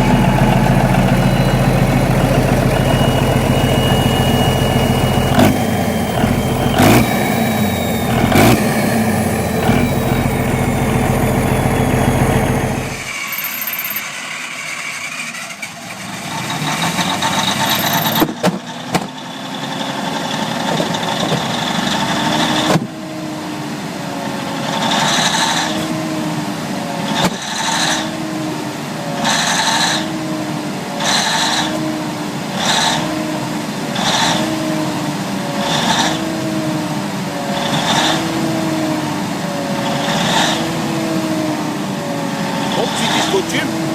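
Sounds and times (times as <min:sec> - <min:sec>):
engine knocks: 0:00.0 - 0:13.3
rising-and-falling whine: 0:00.0 - 0:14.2
large engine running: 0:00.0 - 0:43.9
slow-running old engine: 0:00.0 - 0:43.9.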